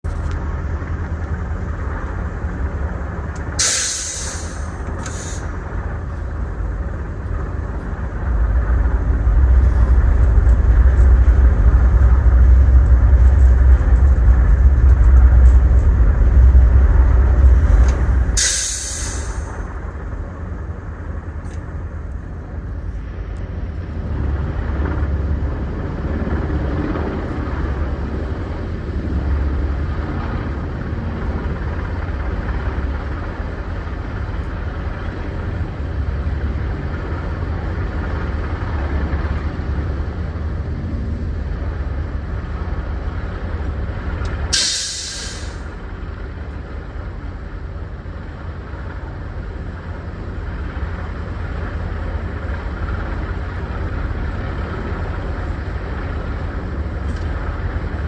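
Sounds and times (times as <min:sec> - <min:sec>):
low engine rumble: 0:00.0 - 0:58.0
wind-like noise: 0:00.0 - 0:58.0
loud burst of hiss: 0:03.6 - 0:05.6, 0:18.4 - 0:19.6, 0:44.5 - 0:45.7.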